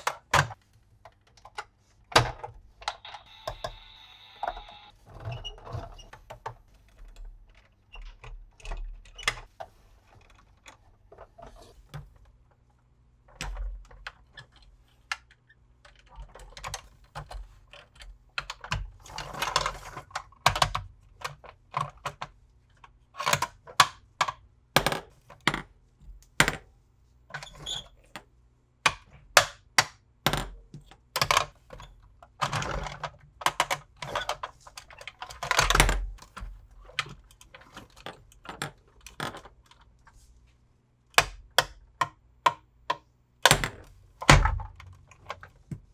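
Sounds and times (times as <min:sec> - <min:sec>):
plastic clicks and knocks: 0:23.2 - 0:25.7, 0:26.3 - 0:26.7, 0:28.9 - 0:39.9, 0:41.1 - 0:45.9.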